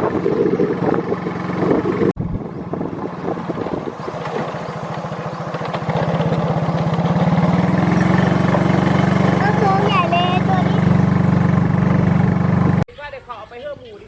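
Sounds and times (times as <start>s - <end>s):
engine running: 0.0s - 12.9s.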